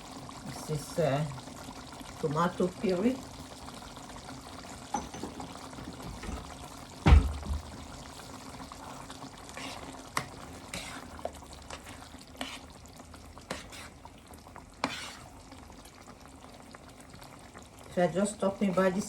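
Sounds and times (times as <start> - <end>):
stew sizzling in a pot: 0.0 - 19.0
spoon scraping a pot: 8.9 - 12.7, 13.4 - 14.0, 14.8 - 16.0.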